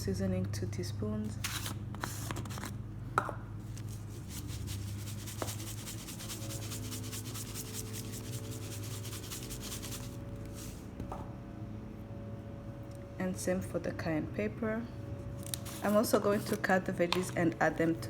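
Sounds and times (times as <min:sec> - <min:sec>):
scratchy rubbing on raw chicken: 0:03.7 - 0:10.9, 0:15.6 - 0:16.7.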